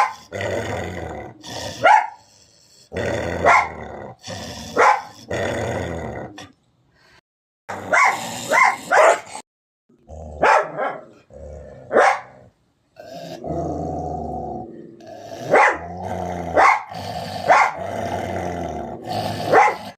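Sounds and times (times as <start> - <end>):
dog barking: 0.0 - 0.2, 1.8 - 2.2, 3.4 - 3.8, 4.7 - 5.2, 7.9 - 9.4, 10.4 - 11.1, 11.9 - 12.4, 15.5 - 15.9, 16.6 - 17.8, 19.4 - 19.9
dog growling low: 0.1 - 6.6, 7.7 - 10.5, 11.1 - 19.9.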